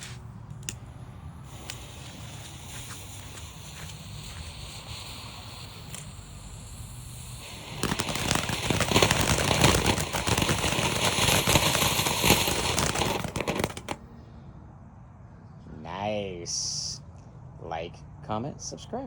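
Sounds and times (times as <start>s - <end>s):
firework fountain crackling hiss: 0.0s - 14.0s.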